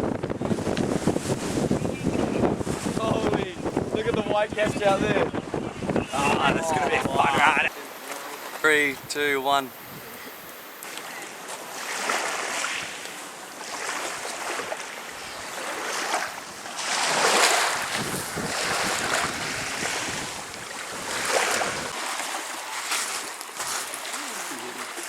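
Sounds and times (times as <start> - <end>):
wind buffeting microphone: 0.0 - 7.7, 8.9 - 10.5, 15.2 - 22.0
choppy sea splashing against boat: 0.0 - 25.0.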